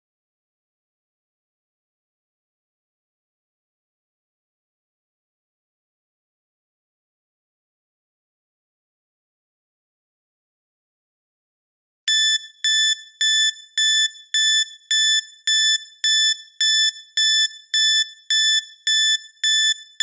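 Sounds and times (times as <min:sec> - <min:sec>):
timer alarm beeps: 0:12.1 - 0:20.0.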